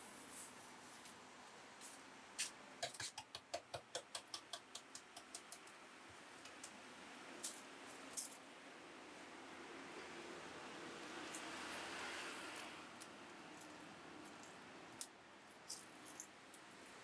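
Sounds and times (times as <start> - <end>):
quick sharp taps: 2.4 - 5.7.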